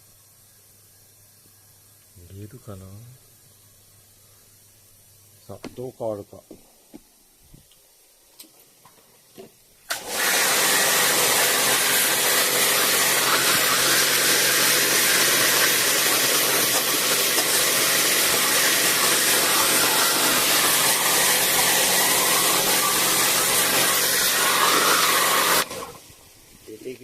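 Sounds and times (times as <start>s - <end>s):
pressure washer motor humming: 9.9s - 26.1s
water spray hissing: 9.9s - 27.0s.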